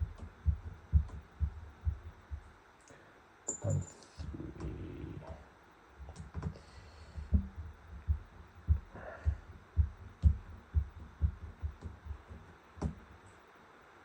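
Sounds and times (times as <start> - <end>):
soft dull thumps: 0.0 - 2.5, 6.0 - 13.2.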